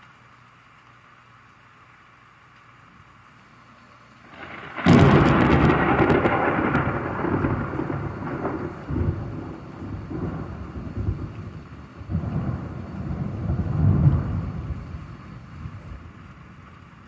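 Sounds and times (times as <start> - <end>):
light rain: 0.0 - 17.0
thunderclap and rumble: 4.3 - 17.0.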